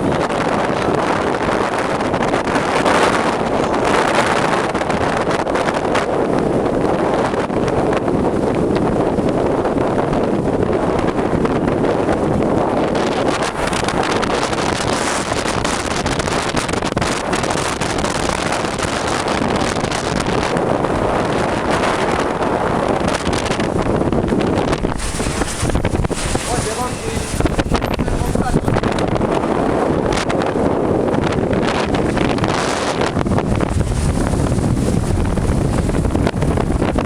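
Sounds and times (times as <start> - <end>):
wind buffeting microphone: 0.0 - 37.0.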